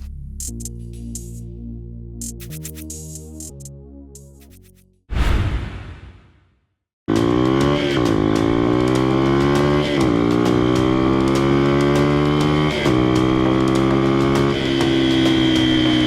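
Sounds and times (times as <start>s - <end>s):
small motorbike engine revving: 7.1s - 16.0s.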